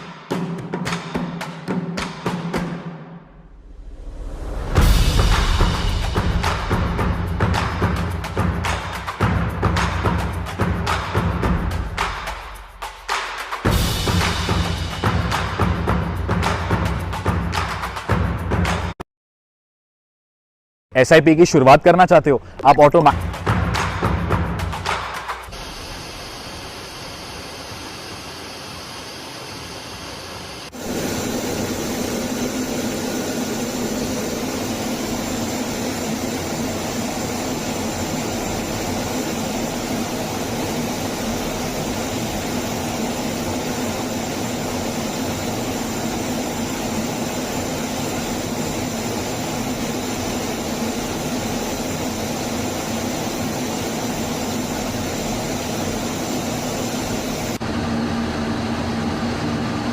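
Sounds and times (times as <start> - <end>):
jet engine running: 3.2 - 18.0, 23.0 - 59.9
thin high whine: 25.5 - 58.9.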